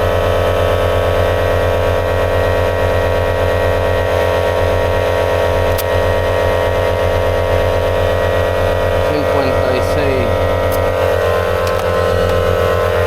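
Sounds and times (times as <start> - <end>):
motor humming: 4.4 - 13.0.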